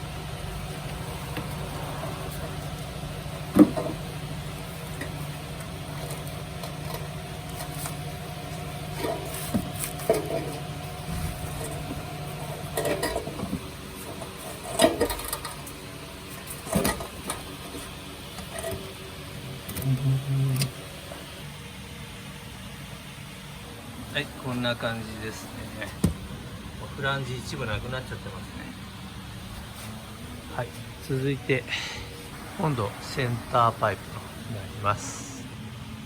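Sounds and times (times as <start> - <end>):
steady low hum: 0.0 - 36.0
metal clanks and knocks: 3.5 - 4.1, 9.0 - 12.0, 12.7 - 15.6.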